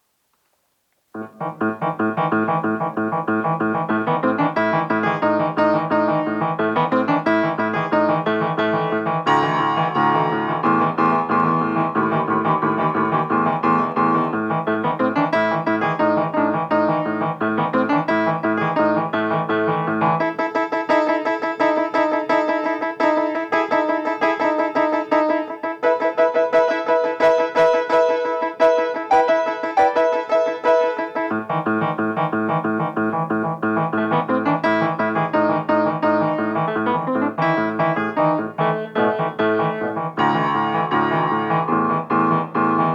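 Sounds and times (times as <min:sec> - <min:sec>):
solo piano playing fast: 0:01.2 - 0:42.9.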